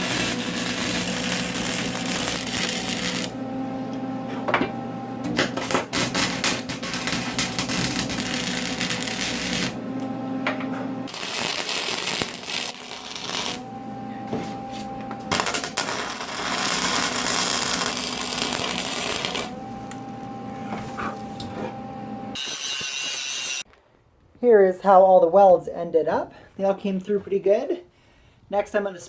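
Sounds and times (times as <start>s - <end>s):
arc welder crackling: 0.0s - 4.1s, 5.2s - 20.7s, 21.3s - 23.8s.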